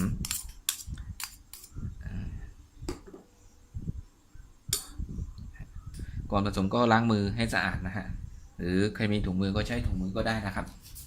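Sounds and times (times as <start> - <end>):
utensils clinking against bowl: 0.0 - 1.7.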